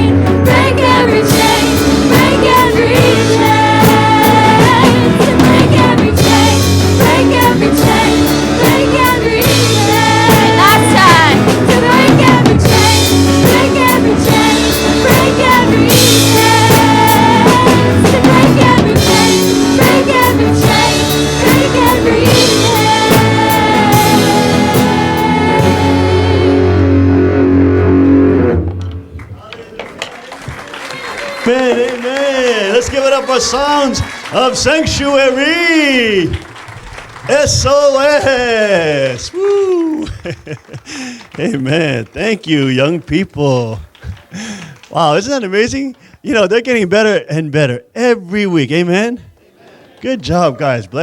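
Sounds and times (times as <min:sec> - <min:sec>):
live rock band music: 0:00.0 - 0:29.4
drum kit: 0:00.0 - 0:29.6, 0:32.7 - 0:41.9.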